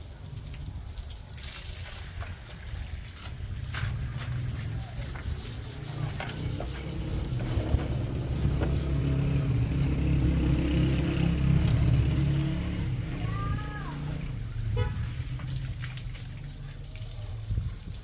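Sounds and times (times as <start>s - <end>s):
low rumble: 3.6s - 16.2s.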